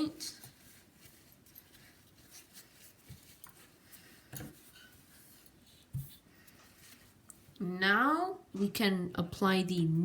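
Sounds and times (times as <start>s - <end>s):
light handling clicks and rubs: 0.3s - 7.5s.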